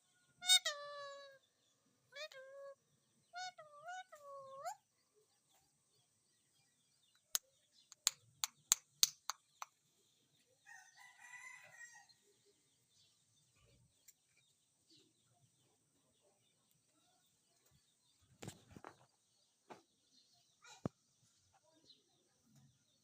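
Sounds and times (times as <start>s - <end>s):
parrot squawking: 0.4s - 1.4s
sharp clicks: 7.4s - 9.8s.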